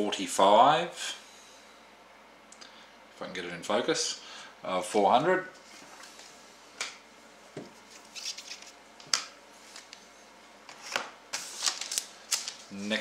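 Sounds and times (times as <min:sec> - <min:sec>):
trading cards being handled: 0:07.8 - 0:10.0, 0:10.7 - 0:13.0.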